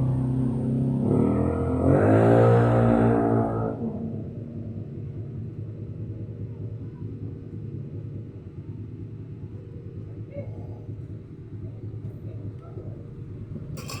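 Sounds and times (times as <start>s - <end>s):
constant hum: 3.7s - 14.0s.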